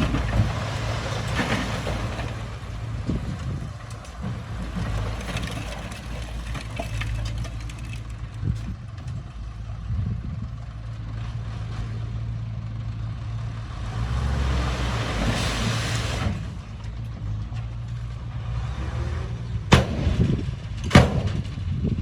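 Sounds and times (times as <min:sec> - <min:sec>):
diesel earthmoving machinery running: 0:00.0 - 0:22.0
sharp bangs: 0:19.7 - 0:21.8.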